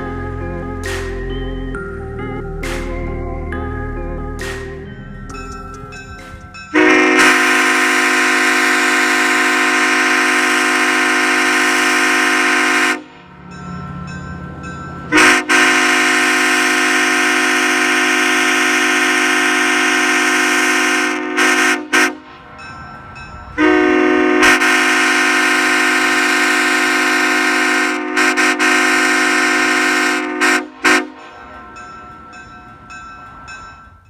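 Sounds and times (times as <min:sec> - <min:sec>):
train horn chord blasts: 0:06.7 - 0:13.2, 0:15.1 - 0:22.3, 0:23.5 - 0:31.5.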